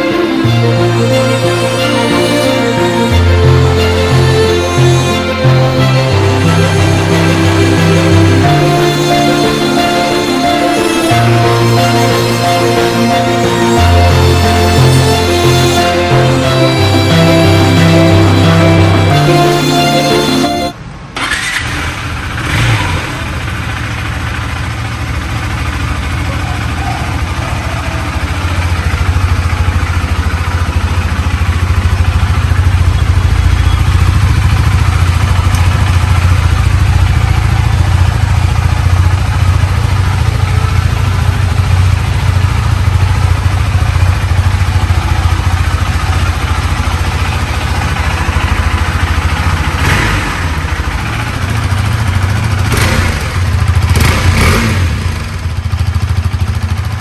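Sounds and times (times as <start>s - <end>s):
motorcycle engine running: 21.2s - 57.0s.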